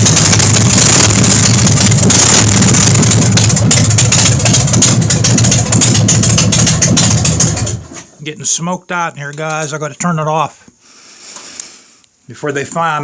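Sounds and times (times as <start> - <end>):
motorcycle engine idling: 0.0 - 7.9.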